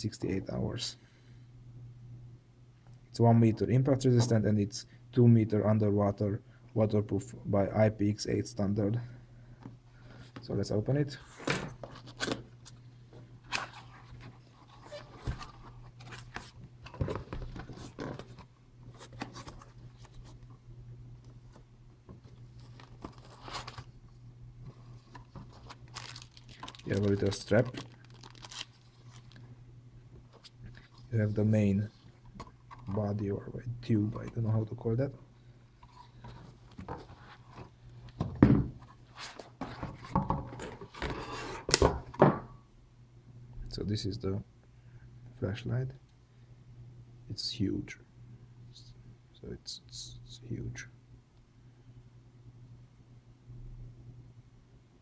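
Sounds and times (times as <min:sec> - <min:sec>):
cardboard packaging rustling: 0:25.0 - 0:29.4
box handling knocks and rustles: 0:36.8 - 0:38.9.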